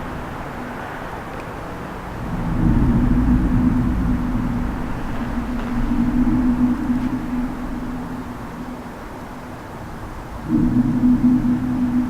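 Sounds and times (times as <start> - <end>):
low droning rumble: 2.0 - 12.0.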